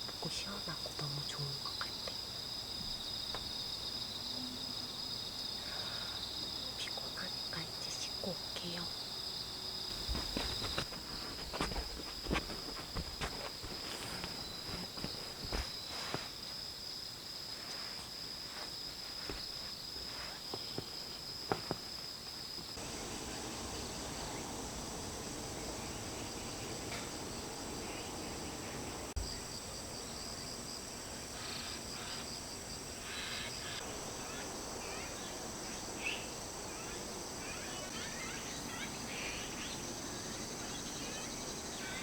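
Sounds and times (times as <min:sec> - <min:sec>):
soft hiss: 0:00.0 - 0:29.8
insects trilling: 0:00.0 - 0:42.0.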